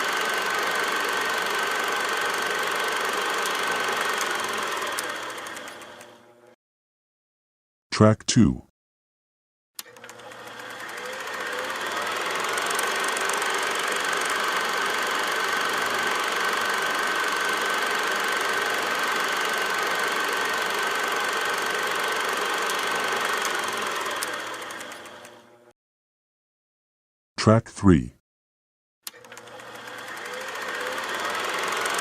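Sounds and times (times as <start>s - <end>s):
film projector clattering: 0.0s - 6.2s, 9.8s - 25.5s, 29.1s - 32.0s.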